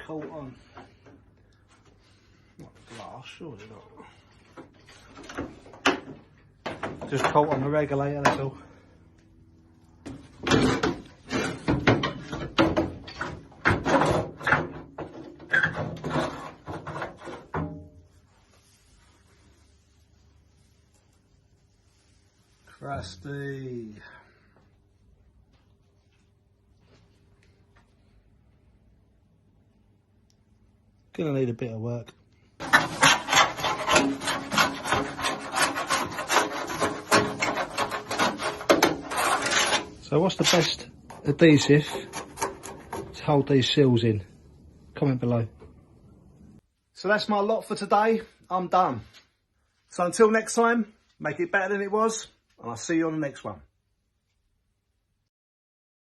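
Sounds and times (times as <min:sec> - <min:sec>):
metal parts scraping and knocking: 0:32.6 - 0:43.2.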